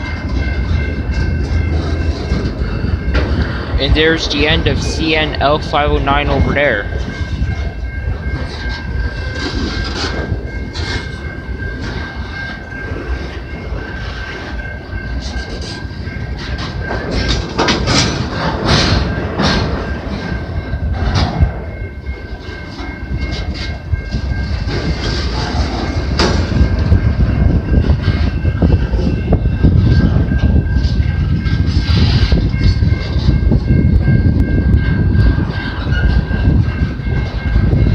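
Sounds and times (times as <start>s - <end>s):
high-pitched tone: 0.0s - 15.6s
train wheels clicking over rails: 8.3s - 21.6s.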